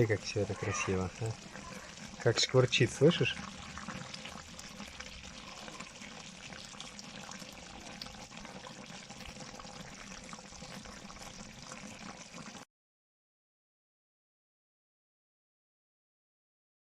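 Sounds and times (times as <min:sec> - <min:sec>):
jam bubbling and sizzling in a pot: 0:00.0 - 0:12.7.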